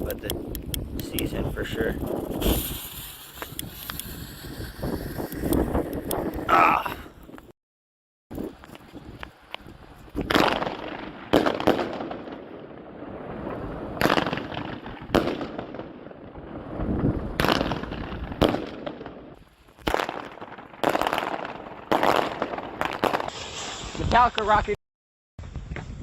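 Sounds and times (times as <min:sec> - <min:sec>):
fireworks bangs: 0:00.0 - 0:06.5, 0:10.2 - 0:24.5
hiss of burning fireworks: 0:00.0 - 0:06.5, 0:08.5 - 0:24.8.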